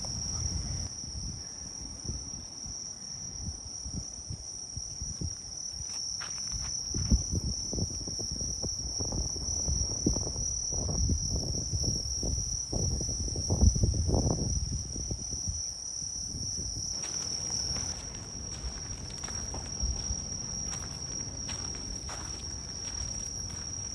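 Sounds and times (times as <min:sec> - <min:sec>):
night insects trilling: 0:00.0 - 0:23.9
faint steady tones: 0:17.0 - 0:23.9.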